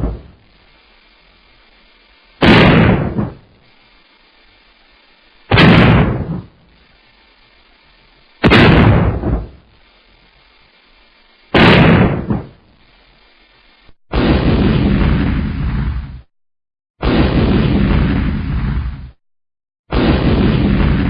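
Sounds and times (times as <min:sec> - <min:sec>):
explosion blasts: 0:00.0 - 0:00.6, 0:02.4 - 0:03.5, 0:05.5 - 0:06.6, 0:08.4 - 0:09.7, 0:11.5 - 0:12.6, 0:14.1 - 0:16.3, 0:17.0 - 0:19.2, 0:19.9 - 0:21.0
rumbling blast: 0:00.0 - 0:00.6, 0:02.4 - 0:03.5, 0:05.5 - 0:06.6, 0:08.4 - 0:09.7, 0:11.5 - 0:12.6, 0:14.1 - 0:16.3, 0:17.0 - 0:19.2, 0:19.9 - 0:21.0.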